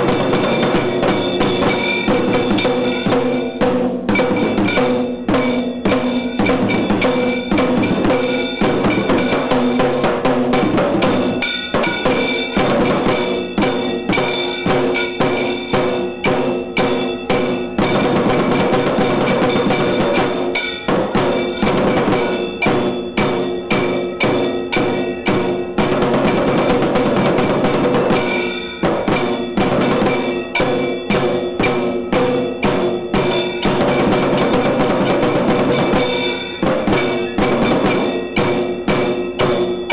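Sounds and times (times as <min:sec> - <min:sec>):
fast dense drumming: 0:00.0 - 0:39.9.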